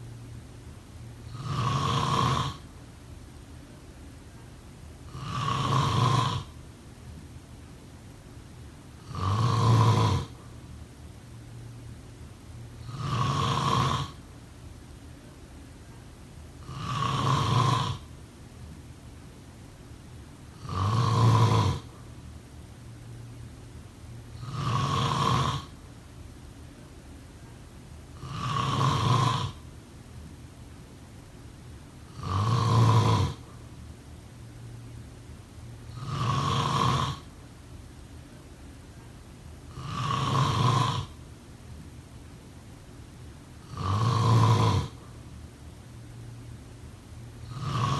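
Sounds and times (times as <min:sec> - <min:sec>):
person snoring: 0:01.3 - 0:02.6, 0:05.1 - 0:06.6, 0:09.0 - 0:10.4, 0:12.8 - 0:14.2, 0:16.6 - 0:18.1, 0:20.6 - 0:22.0, 0:24.4 - 0:25.7, 0:28.2 - 0:29.6, 0:32.1 - 0:33.6, 0:35.9 - 0:37.3, 0:39.7 - 0:41.2, 0:43.6 - 0:45.0, 0:47.4 - 0:47.9.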